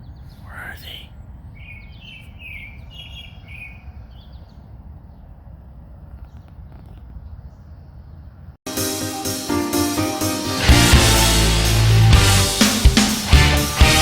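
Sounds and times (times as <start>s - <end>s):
small birds chirping: 0.0s - 8.6s
rock music: 8.7s - 14.0s.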